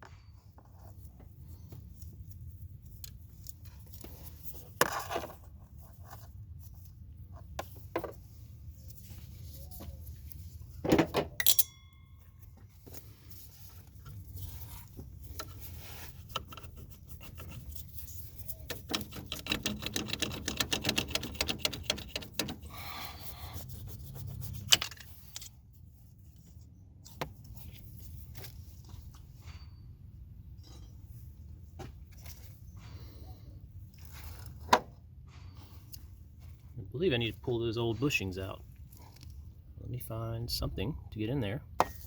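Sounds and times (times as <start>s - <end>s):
sharp metallic clanks: 11.3s - 12.3s.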